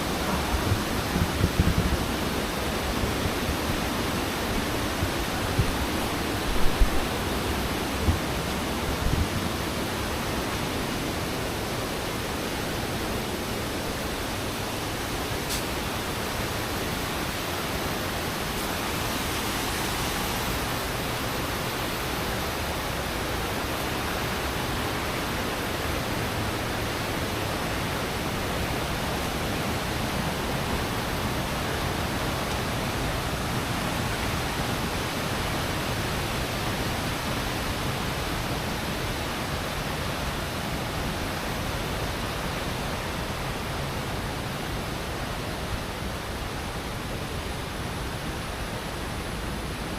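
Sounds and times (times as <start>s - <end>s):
water flowing: 0.0s - 49.8s.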